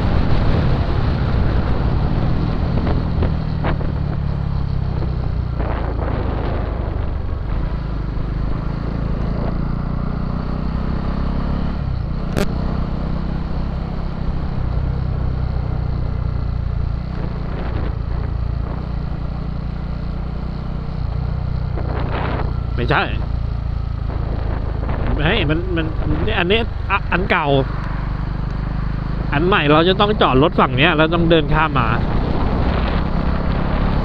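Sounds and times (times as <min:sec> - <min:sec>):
motorcycle engine running: 0:00.0 - 0:34.0
road and wind noise: 0:00.0 - 0:34.0
sharp click: 0:12.3 - 0:12.5.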